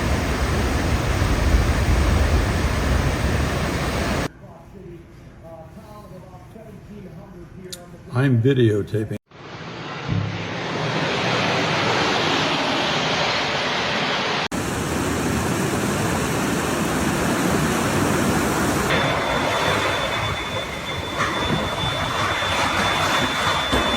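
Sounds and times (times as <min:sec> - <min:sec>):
storm wind and heavy rain: 0:00.0 - 0:04.3, 0:09.4 - 0:23.9
faint steady high tone: 0:18.9 - 0:23.9.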